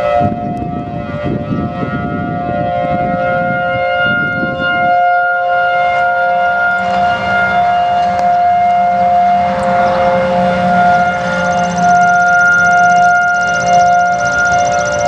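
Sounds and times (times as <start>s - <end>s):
low rumbling noise: 0.0s - 15.0s
warning sirens: 0.0s - 15.0s.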